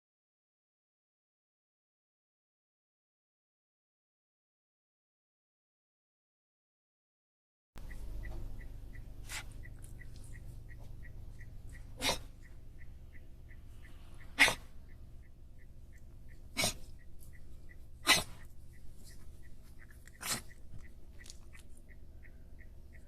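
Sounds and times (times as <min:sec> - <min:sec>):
dog reverse sneezing: 0:09.2 - 0:09.6, 0:12.0 - 0:12.4, 0:14.4 - 0:14.7, 0:16.5 - 0:16.9, 0:18.0 - 0:18.4, 0:20.1 - 0:20.7.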